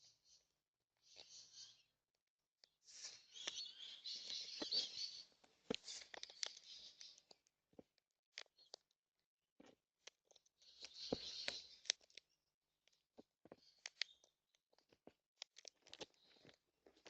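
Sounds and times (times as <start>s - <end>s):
birds cracking seed: 3.0s - 8.9s, 9.6s - 17.0s.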